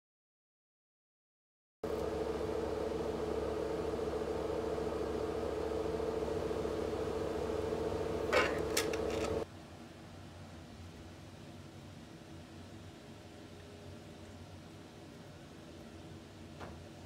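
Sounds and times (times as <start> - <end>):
exhaust fan humming: 1.8 - 9.5
sharp clicks or rattles: 8.3 - 9.4.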